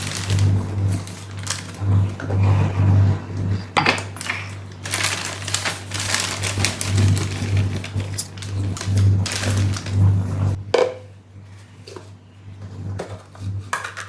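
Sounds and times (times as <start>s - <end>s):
light clicks and rustling: 0.0s - 10.6s.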